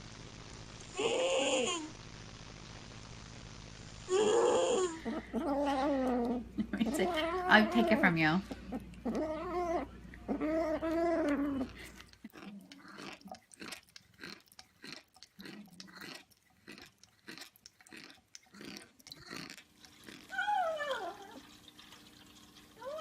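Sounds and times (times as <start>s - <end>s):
cat yowling: 4.1s - 8.1s, 9.0s - 11.7s, 20.3s - 21.4s
cat chewing: 8.4s - 20.4s.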